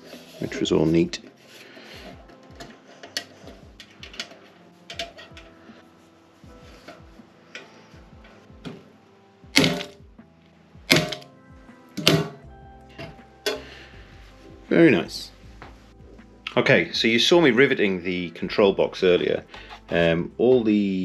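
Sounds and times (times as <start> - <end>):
faint background music: 0.0 - 21.0
hammer striking metal: 9.6 - 10.0, 10.9 - 11.3, 12.0 - 12.4.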